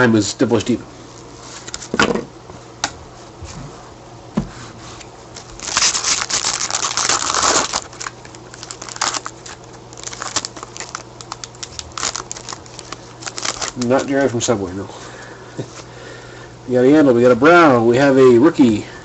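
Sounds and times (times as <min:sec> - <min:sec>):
foil wrapper crinkling and tearing: 0:05.4 - 0:14.3.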